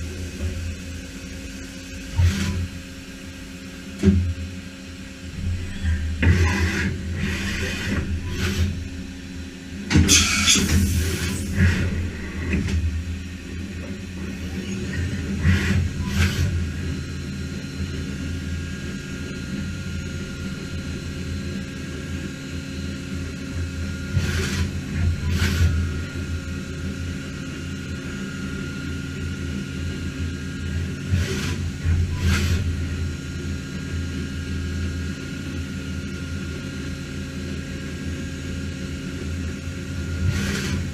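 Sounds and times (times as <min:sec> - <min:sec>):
machine low mechanical hum: 0:00.0 - 0:40.9.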